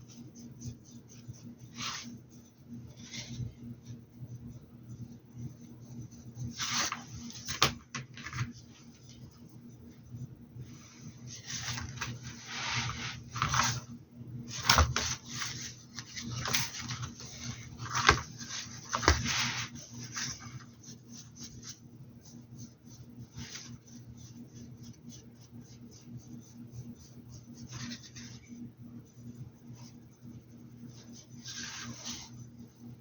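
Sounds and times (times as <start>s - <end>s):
brush strokes scrubbing: 12.3s - 13.4s.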